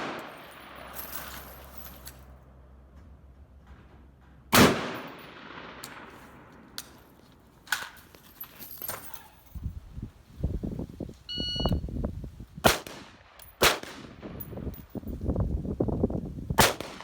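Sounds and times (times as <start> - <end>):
rifle shot: 0.0 - 0.8, 4.5 - 6.5, 12.6 - 14.4, 16.6 - 17.0.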